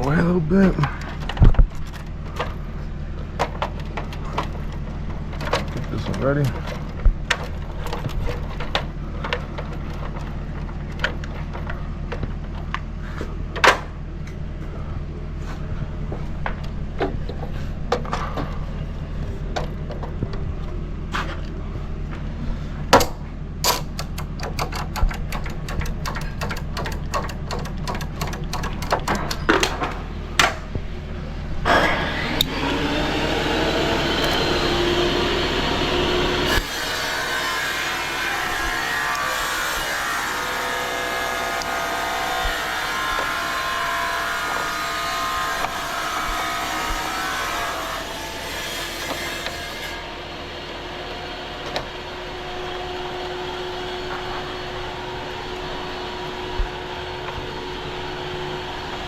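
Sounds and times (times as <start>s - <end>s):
tools and parts knocking: 23.0s - 30.6s
power tool running: 23.7s - 29.6s, 31.7s - 50.4s.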